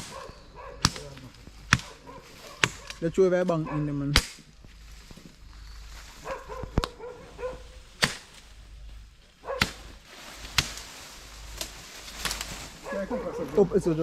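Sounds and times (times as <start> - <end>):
machete chopping wood: 0.0 - 3.0, 4.1 - 4.5, 8.0 - 8.4, 9.6 - 9.9, 10.5 - 10.9.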